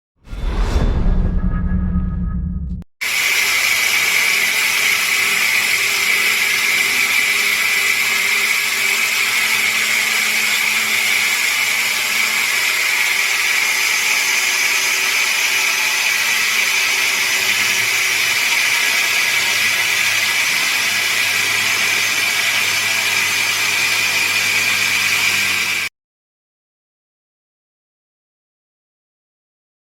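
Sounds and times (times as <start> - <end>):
angle grinder running: 3.0 - 25.9.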